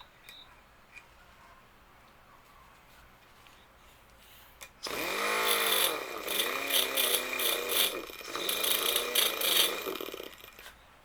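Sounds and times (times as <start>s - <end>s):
hand grinder spinning up: 4.8s - 10.7s
grinder grinding metal: 4.9s - 10.6s.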